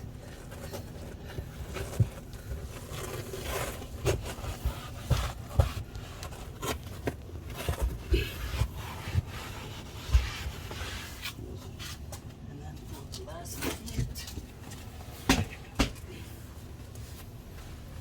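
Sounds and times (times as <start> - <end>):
floor mat scraping and rustling: 0.0 - 12.3.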